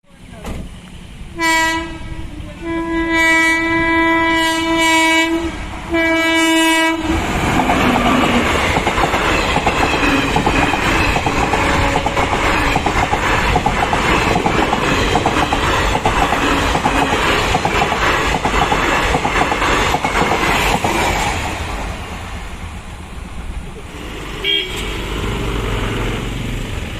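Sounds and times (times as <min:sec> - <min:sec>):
train rushing past: 0:00.2 - 0:26.9
locomotive horn blasts: 0:01.4 - 0:07.3, 0:24.4 - 0:25.0
wheels clattering over rail joints: 0:07.2 - 0:21.8.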